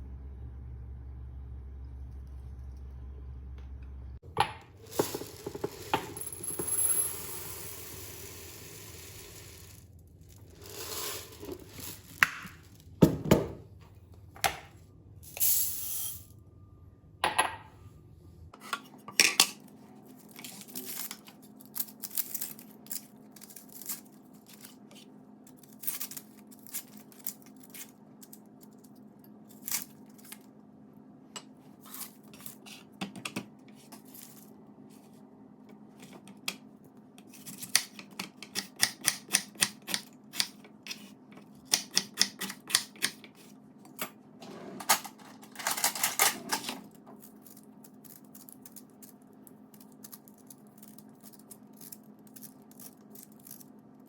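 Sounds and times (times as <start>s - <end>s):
low steady hum: 0.0s - 38.2s.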